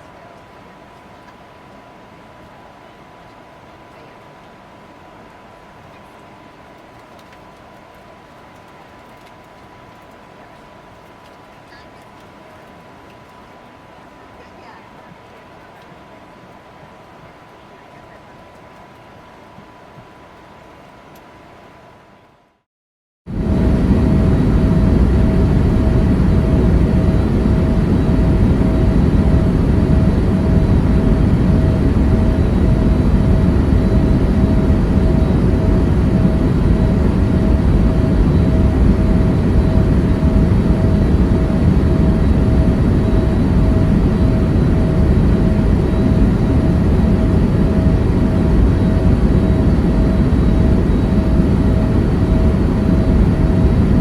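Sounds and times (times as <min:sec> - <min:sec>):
engine rumble and rushing air: 0:23.3 - 0:54.0
steady mid-pitched hum: 0:23.3 - 0:54.0.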